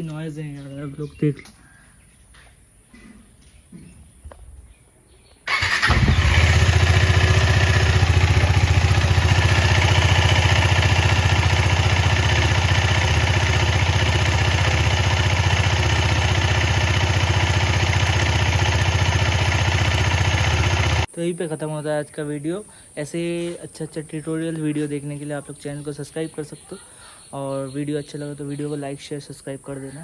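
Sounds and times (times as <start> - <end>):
motorcycle engine starting and running: 5.5 - 21.1.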